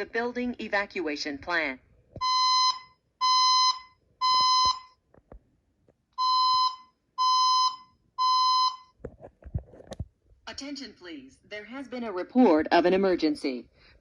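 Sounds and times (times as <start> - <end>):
fire alarm beeping: 2.2 - 5.0, 6.2 - 9.0.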